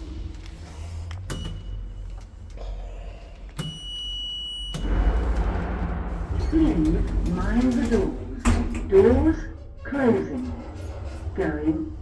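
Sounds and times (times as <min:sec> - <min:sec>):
low rumble: 0:04.8 - 0:12.0.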